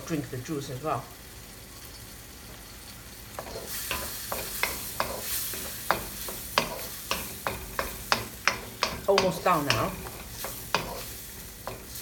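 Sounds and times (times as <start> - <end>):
food sizzling in a frying pan: 0.0 - 12.0
utensil knocking against pan: 5.9 - 11.0.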